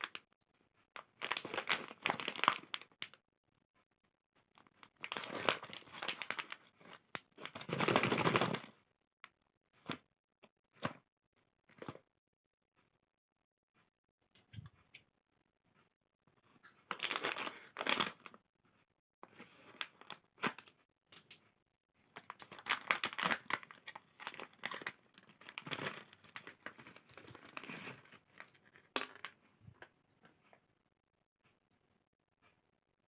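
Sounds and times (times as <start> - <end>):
plastic snack packet crinkling: 1.0 - 3.2, 4.6 - 8.7, 16.9 - 18.4, 19.6 - 21.4, 22.0 - 29.4.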